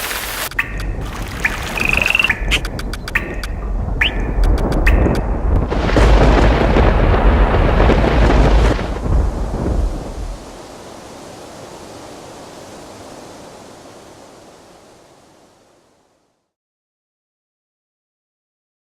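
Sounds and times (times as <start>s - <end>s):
deep thunder rumble: 1.0s - 10.6s.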